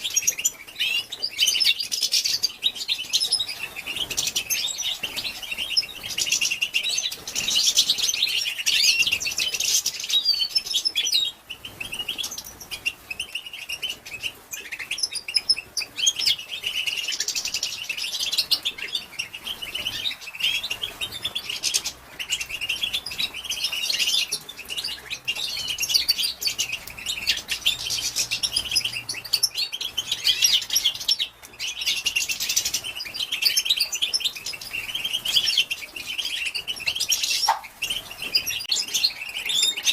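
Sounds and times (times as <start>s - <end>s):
goldfinch twittering: 0.0s - 39.9s.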